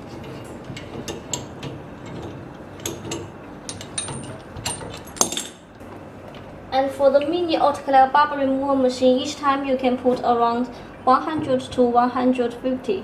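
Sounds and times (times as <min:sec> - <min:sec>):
mechanical parts clicking and knocking: 0:00.1 - 0:05.8.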